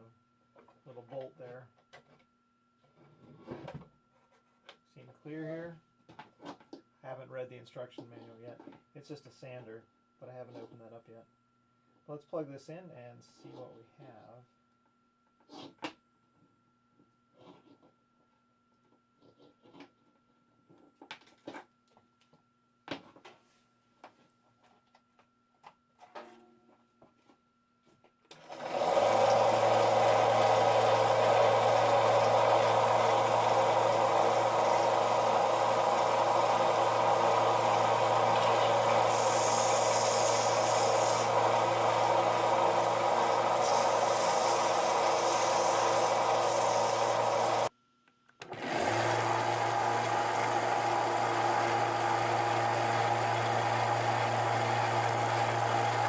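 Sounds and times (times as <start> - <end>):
belt sander running: 28.4 - 47.7, 48.5 - 56.0.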